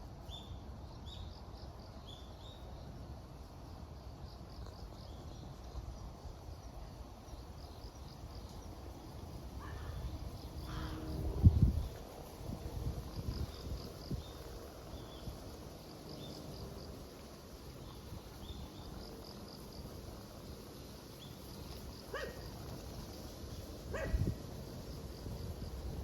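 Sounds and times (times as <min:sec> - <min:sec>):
faint high insect chirping: 0:00.0 - 0:26.0
low wind rumble: 0:00.1 - 0:26.0
dog barking: 0:22.1 - 0:22.4, 0:23.9 - 0:24.2.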